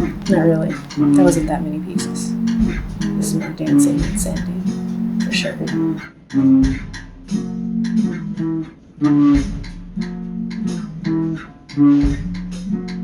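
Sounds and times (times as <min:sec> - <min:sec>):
plucked guitar music: 0:00.0 - 0:06.0.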